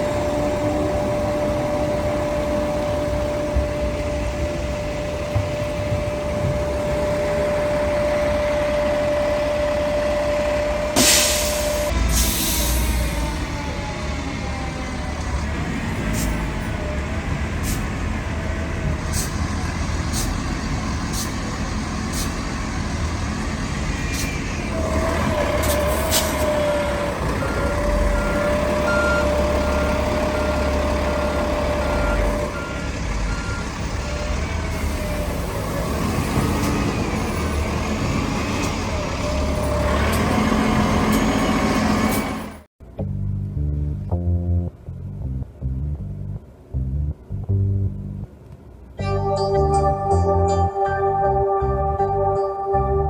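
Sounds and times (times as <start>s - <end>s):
bus engines rumbling: 0.0s - 53.0s
held tone: 49.0s - 53.0s.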